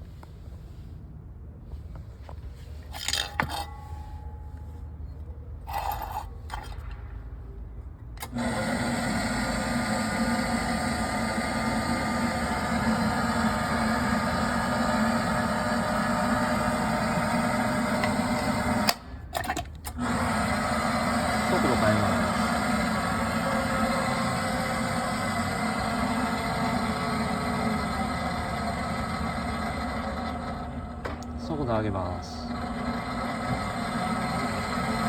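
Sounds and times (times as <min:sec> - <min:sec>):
metal clinks and scrapes: 0:02.6 - 0:07.1
electric motor humming: 0:08.2 - 0:19.0, 0:19.9 - 0:35.0.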